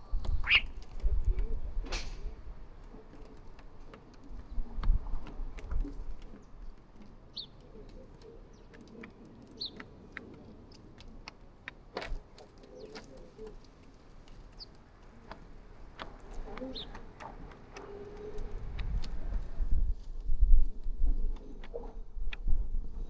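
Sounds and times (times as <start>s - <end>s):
low bird calls: 0.0s - 2.4s, 16.0s - 19.6s
birds chirping: 0.1s - 2.5s, 6.3s - 11.0s, 12.3s - 19.6s.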